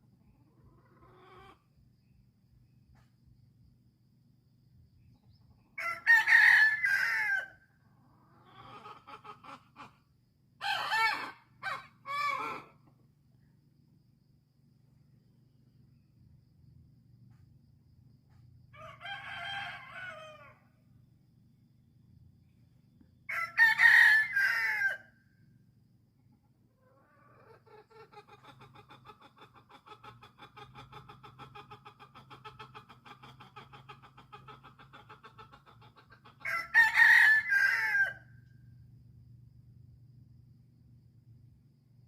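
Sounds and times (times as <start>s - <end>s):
roosters crowing: 5.7s - 9.6s, 10.6s - 12.9s, 18.7s - 20.8s, 23.2s - 25.2s, 36.3s - 38.4s
chicken rattling cluck: 26.9s - 36.6s.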